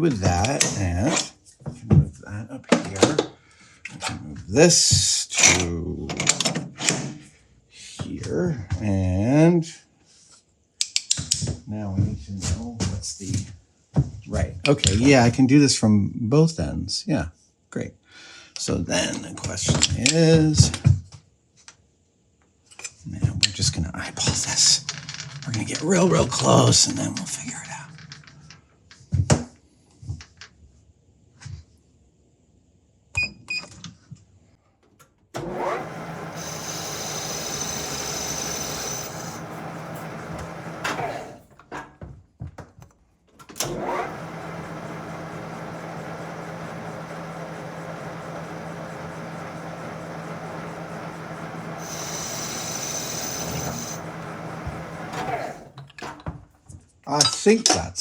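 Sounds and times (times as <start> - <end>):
lathe motor running: 35.4 - 41.4, 43.6 - 55.8
lathe tool cutting hiss: 35.4 - 41.4, 43.6 - 55.7.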